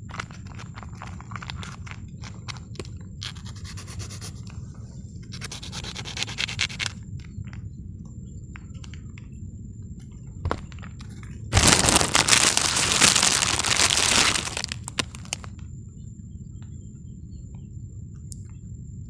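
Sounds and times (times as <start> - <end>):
low wind rumble: 0.0 - 19.0
scraping and rustling handling: 10.5 - 15.5.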